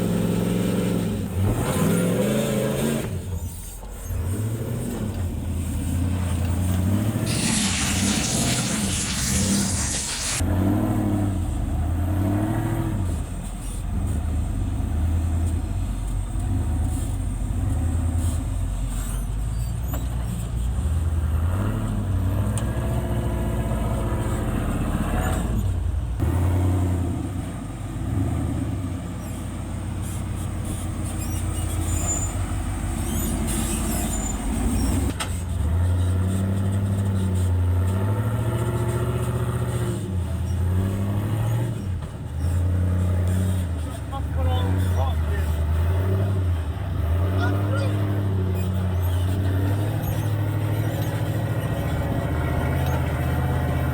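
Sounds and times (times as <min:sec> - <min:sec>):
engine revving: 0:00.0 - 0:14.2.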